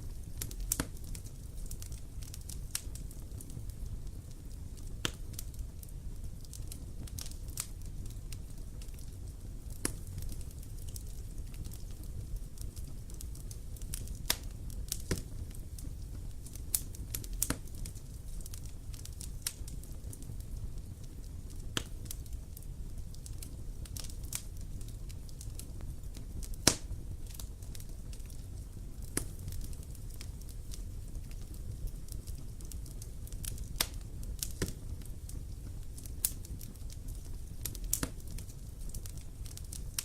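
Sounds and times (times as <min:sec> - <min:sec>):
fire crackles and pops: 0:00.0 - 0:40.0
low rumble of flames: 0:00.0 - 0:40.0.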